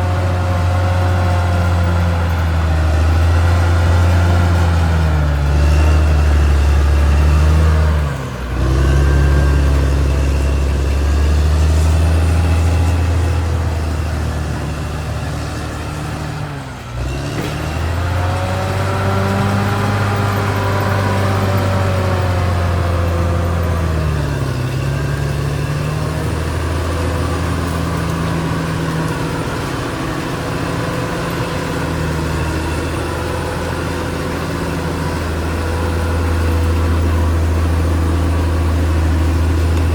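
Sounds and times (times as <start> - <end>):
bulldozer diesel engine running: 0.0 - 39.9.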